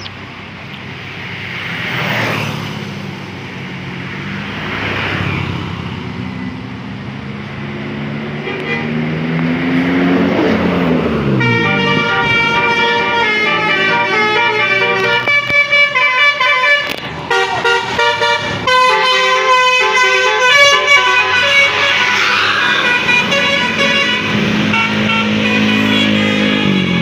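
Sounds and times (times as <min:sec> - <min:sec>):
multi-tone bus horn tune: 0:08.3 - 0:09.3, 0:11.2 - 0:27.0.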